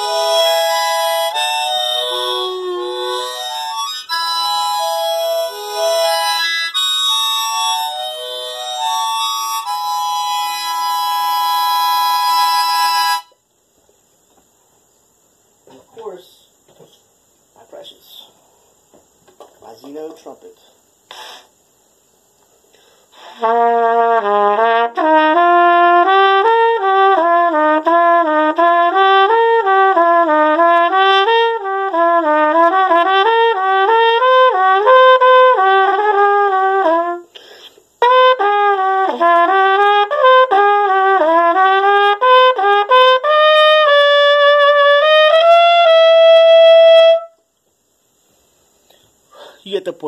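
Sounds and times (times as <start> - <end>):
trumpet playing runs: 0.0 - 13.4, 23.2 - 37.3, 38.0 - 47.4
long held trumpet note: 23.3 - 37.3, 38.0 - 47.4.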